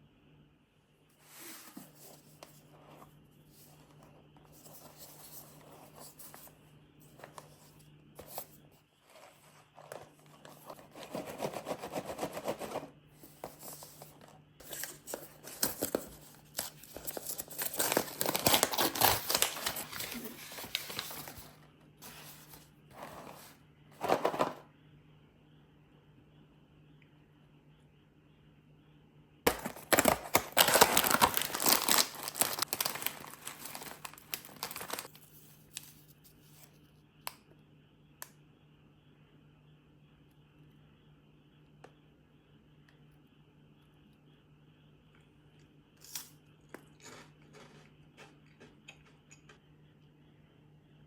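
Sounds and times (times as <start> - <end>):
packaging crinkling and tearing: 14.6 - 21.5, 29.5 - 35.2.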